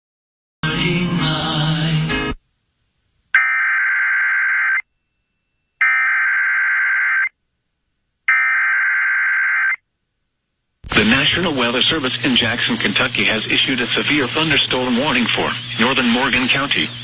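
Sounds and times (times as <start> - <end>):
digital data tone bursts: 3.4 - 4.8, 8.3 - 9.8.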